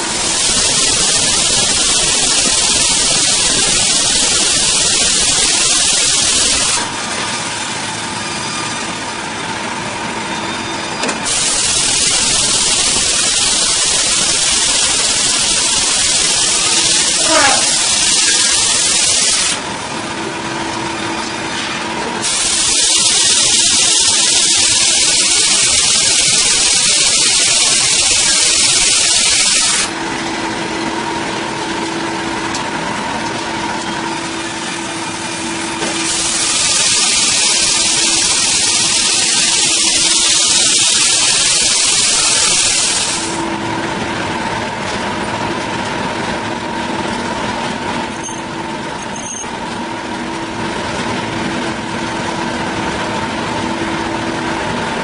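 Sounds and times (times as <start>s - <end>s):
loud hissing: 0.0s - 7.0s, 11.2s - 19.6s, 22.2s - 30.0s, 35.8s - 43.4s
wood-cutting machinery humming: 0.0s - 55.0s.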